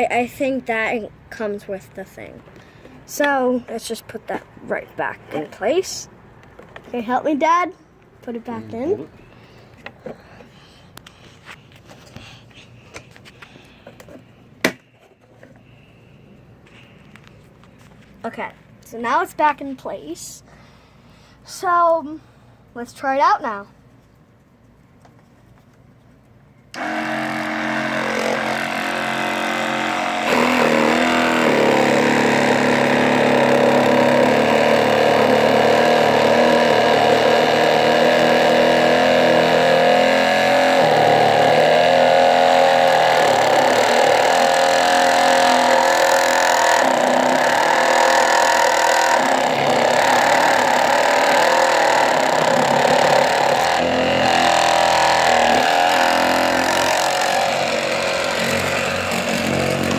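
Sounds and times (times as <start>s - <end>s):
small table saw motor whining: 26.8s - 59.9s.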